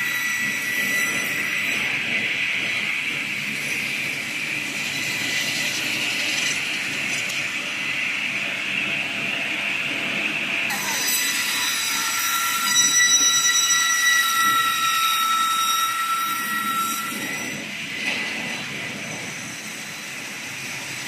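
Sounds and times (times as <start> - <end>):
woodworking machine whining: 10.7 - 18.3.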